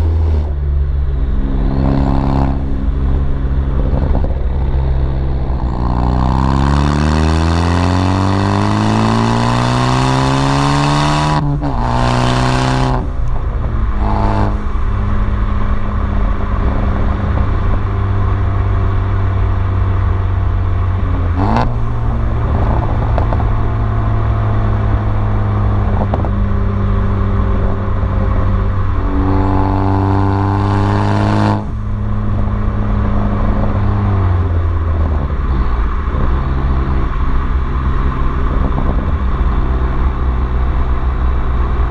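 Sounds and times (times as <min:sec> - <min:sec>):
car exhaust accelerating: 0:00.0 - 0:41.9.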